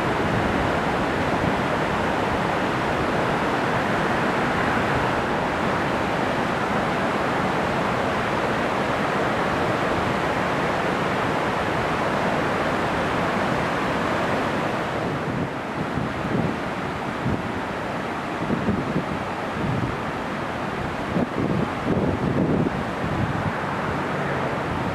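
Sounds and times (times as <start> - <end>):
rushing water roar: 0.0 - 24.9
wind buffeting microphone: 14.0 - 20.1, 20.7 - 24.9.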